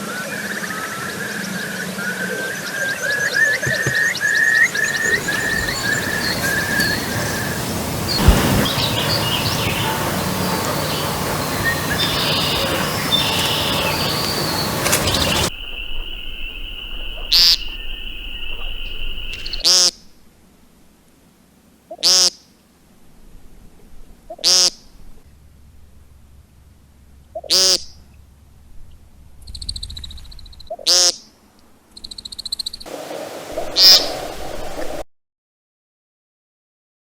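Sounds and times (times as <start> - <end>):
woodcock calling: 3.4 - 19.8
dense noise: 4.7 - 17.2.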